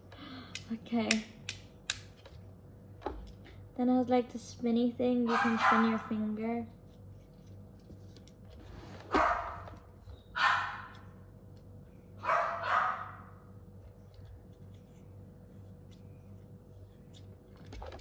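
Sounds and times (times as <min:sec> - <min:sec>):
dog barking: 0:05.3 - 0:06.1, 0:09.1 - 0:09.7, 0:10.4 - 0:11.0, 0:12.2 - 0:13.4.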